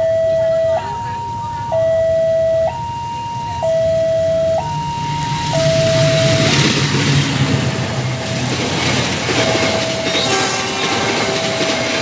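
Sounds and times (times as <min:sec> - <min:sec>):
low engine rumble: 0:00.0 - 0:11.8
two-tone warning alarm: 0:00.0 - 0:12.0
rushing noise: 0:04.7 - 0:12.0.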